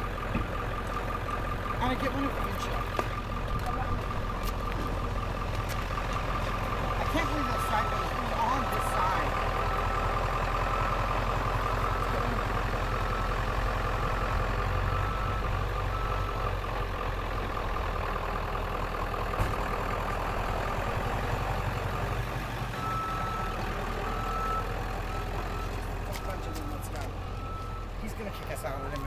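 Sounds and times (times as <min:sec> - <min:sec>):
vehicle engine idling: 0:00.0 - 0:29.0.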